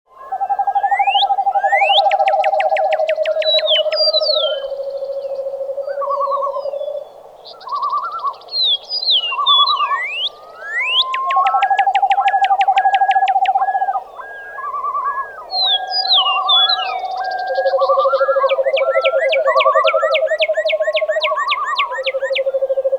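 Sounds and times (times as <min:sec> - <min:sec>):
low steady bird trill: 0:00.1 - 0:22.9
bird warbling: 0:00.4 - 0:06.8, 0:09.2 - 0:22.9
high whistled bird notes: 0:00.7 - 0:04.7, 0:08.6 - 0:22.4
fast sharp bird chirps: 0:01.0 - 0:04.6, 0:09.1 - 0:14.0.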